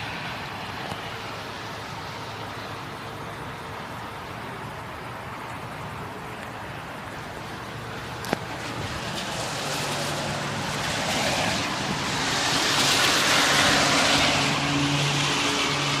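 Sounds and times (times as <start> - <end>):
gusty storm wind rushing: 8.6 - 15.3.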